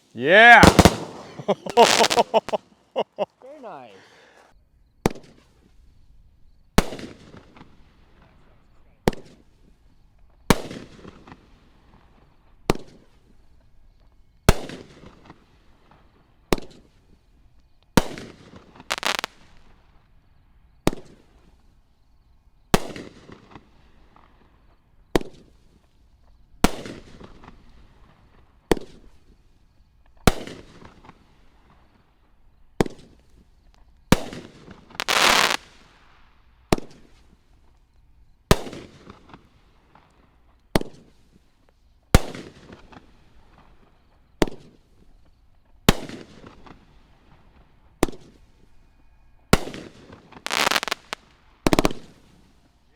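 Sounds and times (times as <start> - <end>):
firework shell bangs: 0.4 - 2.5.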